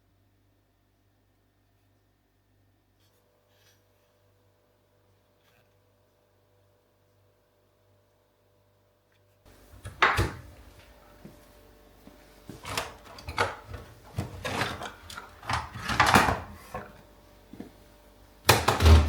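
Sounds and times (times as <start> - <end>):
kitchen knocks and scrapes: 9.8 - 10.5, 12.5 - 17.0.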